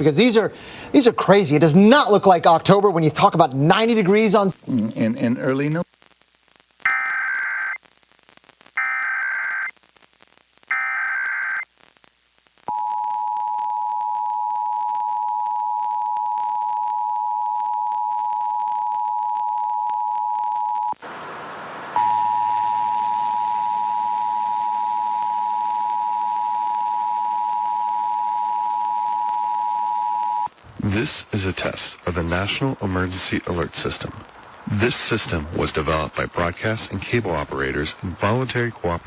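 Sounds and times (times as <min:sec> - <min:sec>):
radio hiss: 0:03.6 - 0:12.8, 0:20.8 - 0:39.0
buzzing digital data bursts: 0:06.8 - 0:07.8, 0:08.8 - 0:09.7, 0:10.7 - 0:11.7
faint hum: 0:10.1 - 0:39.0
two-tone attention signal: 0:22.0 - 0:30.5.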